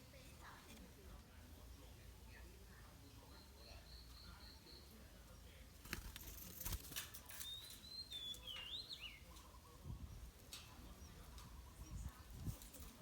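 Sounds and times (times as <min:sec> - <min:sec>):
bird whistling: 0:07.4 - 0:09.2.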